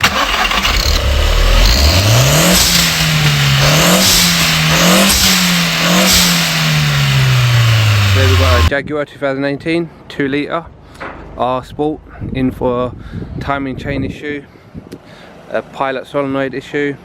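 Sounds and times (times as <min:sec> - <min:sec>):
car engine revving: 0:00.0 - 0:08.7.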